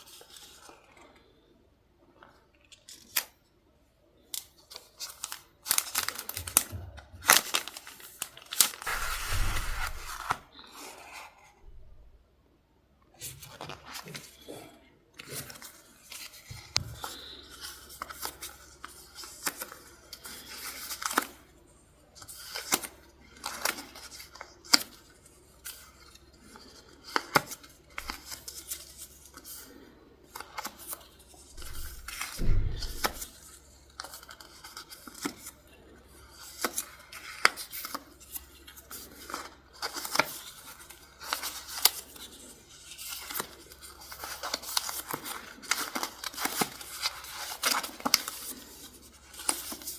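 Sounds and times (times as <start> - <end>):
paper rustling and tearing: 5.0 - 12.1, 30.6 - 35.4.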